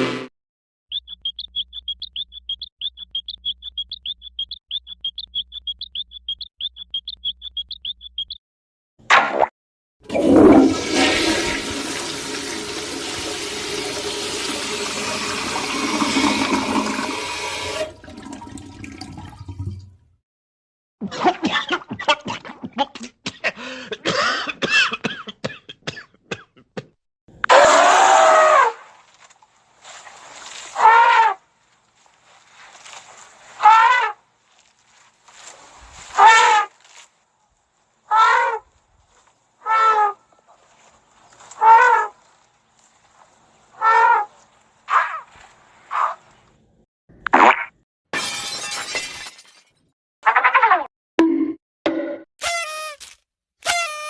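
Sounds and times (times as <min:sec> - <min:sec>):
toilet flushing: 0:10.0 - 0:19.6.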